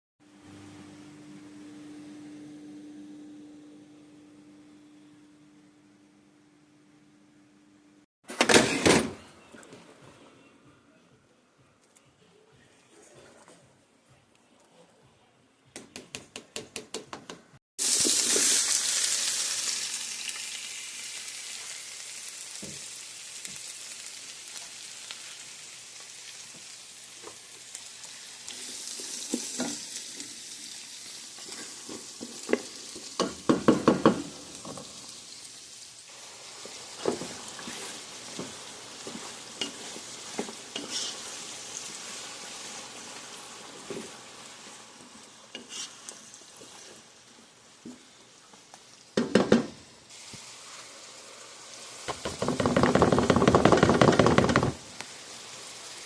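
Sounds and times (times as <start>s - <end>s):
food sizzling in hot oil: 17.8s - 49.2s, 50.0s - 52.7s, 54.9s - 56.0s
spoon knocking and scraping pan: 31.6s - 34.9s, 36.6s - 41.2s.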